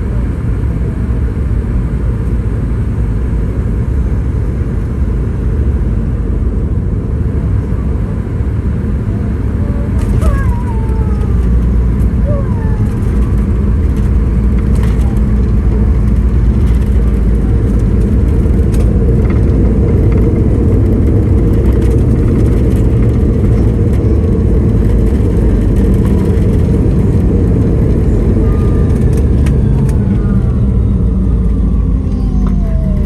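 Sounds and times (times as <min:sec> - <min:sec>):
jet engines in airliner cabin: 0:00.0 - 0:33.0
wheel rumble on runway: 0:00.0 - 0:33.0
faint gliding whines: 0:09.1 - 0:33.0.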